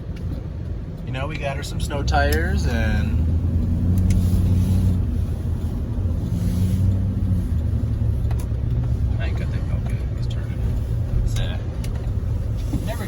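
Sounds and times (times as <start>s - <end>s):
engine and tyre rumble: 0.0s - 13.0s.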